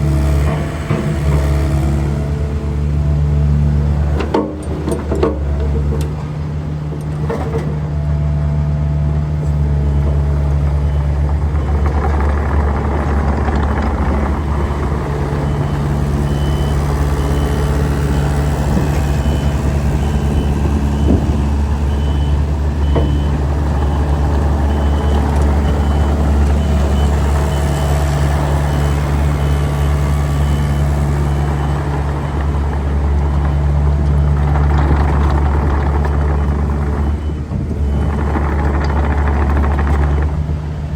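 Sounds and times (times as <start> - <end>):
excavator diesel engine running: 0.0 - 40.9
high travel alarm beeps: 14.7 - 32.6.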